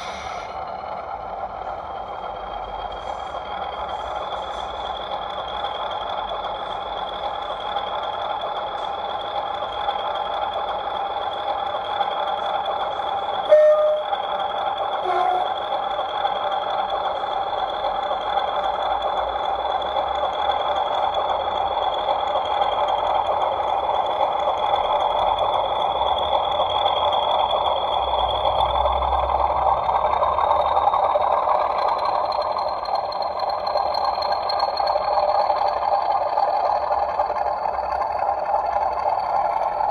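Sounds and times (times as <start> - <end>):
diesel engine through small speaker: 0.0 - 39.9
turbocharger whistle: 13.4 - 14.3, 15.0 - 15.6.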